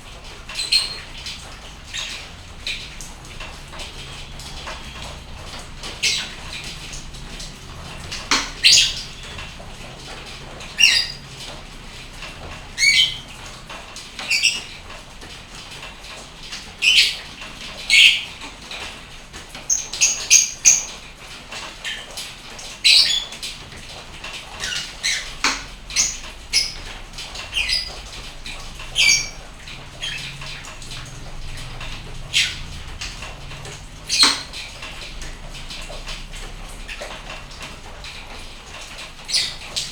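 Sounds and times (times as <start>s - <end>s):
faint hiss of rain: 0.0s - 39.9s
bird chirping and squawking: 0.4s - 3.0s, 3.7s - 9.8s, 10.6s - 11.5s, 12.7s - 13.4s, 14.2s - 14.8s, 16.8s - 17.3s, 17.9s - 18.3s, 19.7s - 21.0s, 22.8s - 23.4s, 24.6s - 35.2s, 39.2s - 39.9s.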